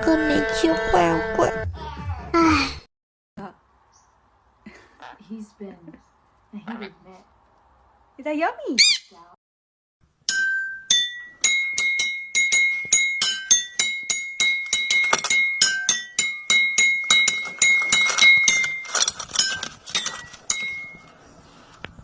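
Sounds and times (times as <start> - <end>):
struck ringing notes: 10.2 - 19.7.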